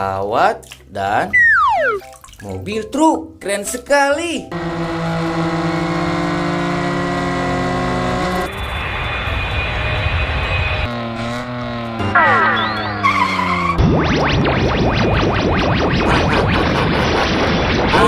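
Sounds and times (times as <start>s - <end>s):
falling whistles: 1.3s - 2.0s, 12.2s - 13.8s
engine-like hum: 4.5s - 18.0s.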